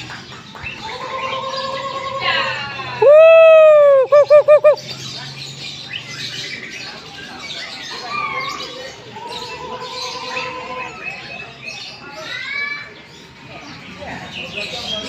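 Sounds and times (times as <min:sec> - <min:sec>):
other birds chirping: 0:00.0 - 0:15.0
bird whistling song: 0:03.8 - 0:07.8.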